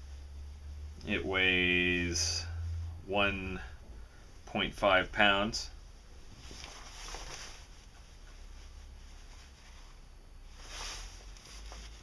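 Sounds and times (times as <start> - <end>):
faint handling rustles: 6.2 - 12.0.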